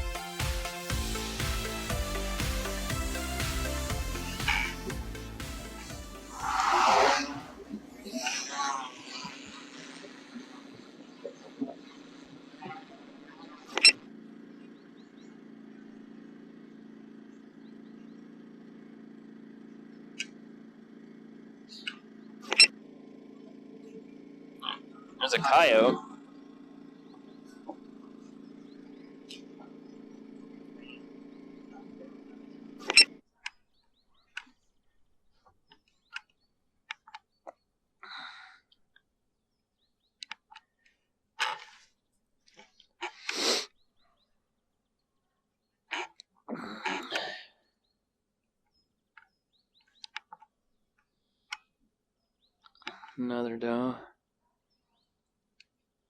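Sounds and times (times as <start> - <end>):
motor hum: 0.0 - 34.6
short hiss: 43.2 - 43.7.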